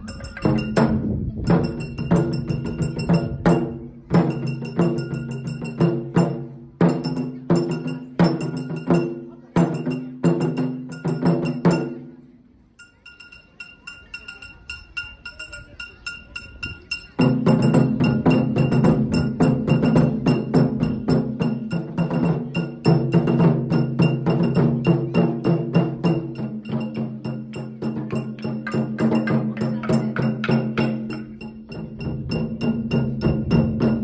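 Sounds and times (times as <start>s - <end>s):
held high ringing tone: 0.0s - 3.7s, 12.8s - 21.8s
drum ensemble playing: 0.0s - 12.2s, 16.2s - 34.0s.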